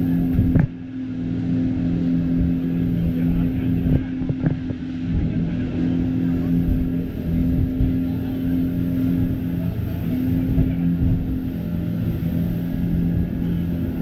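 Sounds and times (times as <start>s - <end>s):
outboard engine running: 0.0s - 14.0s
rush of wind and water: 0.0s - 14.0s.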